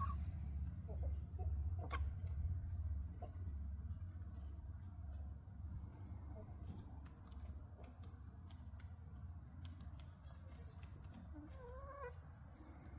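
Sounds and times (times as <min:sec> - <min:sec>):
chickens clucking: 0:00.0 - 0:03.6, 0:10.8 - 0:12.2
low steady rumble: 0:00.0 - 0:12.9.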